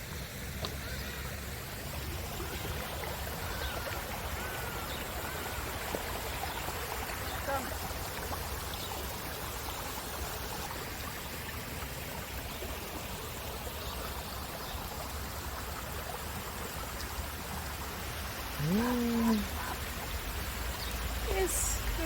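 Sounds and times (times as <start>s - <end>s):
person crying out: 18.6s - 19.8s.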